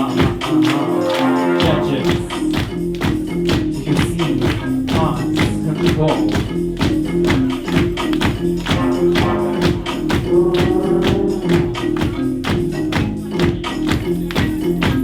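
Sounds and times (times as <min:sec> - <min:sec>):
dance music with percussion and bass: 0:00.0 - 0:15.0.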